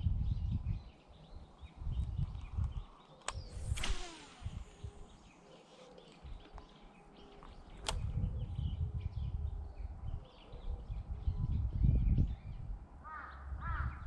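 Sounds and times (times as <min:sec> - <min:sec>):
faint bird chirps: 0:00.0 - 0:14.0
sharp click: 0:02.4 - 0:06.7.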